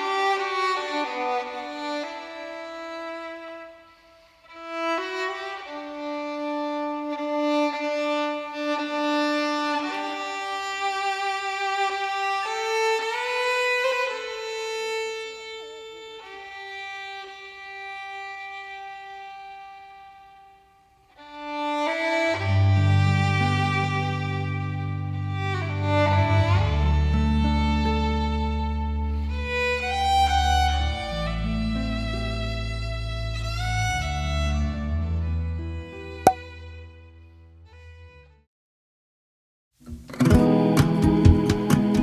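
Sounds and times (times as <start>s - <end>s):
solo violin slow notes: 0.0s - 38.3s
low bass: 22.6s - 33.6s.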